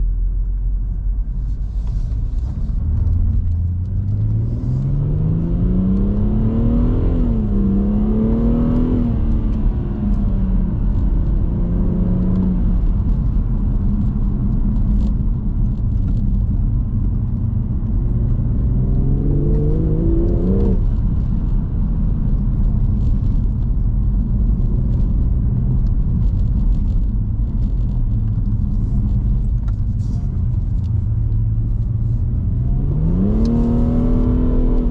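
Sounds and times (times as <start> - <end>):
road rumble: 0.0 - 34.9
car engine accelerating: 0.8 - 34.9.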